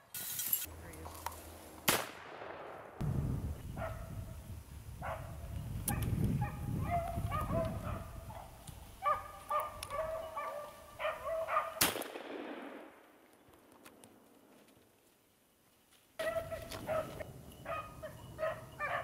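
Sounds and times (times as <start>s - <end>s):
hounds baying: 5.0s - 11.8s, 16.2s - 19.0s.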